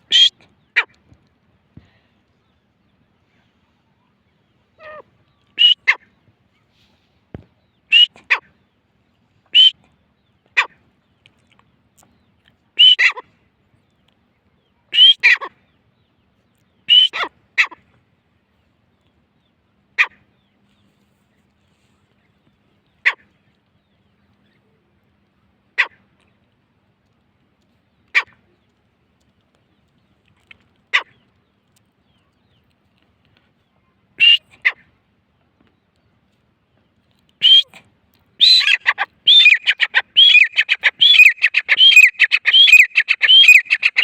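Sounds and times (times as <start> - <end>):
francolin calling: 0.0 - 0.9, 12.8 - 13.2, 37.4 - 37.7, 38.4 - 44.0.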